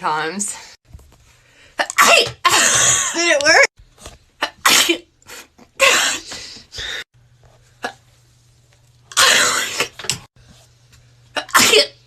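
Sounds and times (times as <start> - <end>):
person sneezing: 4.4 - 7.0, 9.1 - 10.0.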